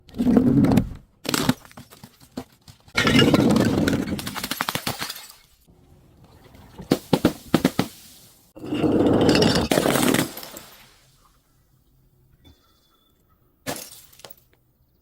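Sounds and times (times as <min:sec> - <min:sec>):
things crashing and breaking: 0:03.0 - 0:05.6, 0:06.8 - 0:11.0
sharp cracks: 0:04.0 - 0:05.4.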